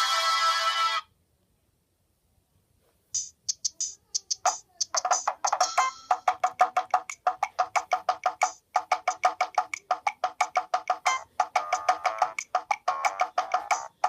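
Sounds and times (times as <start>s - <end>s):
ringtone melody on small loudspeaker: 0.0s - 1.1s, 3.2s - 14.0s.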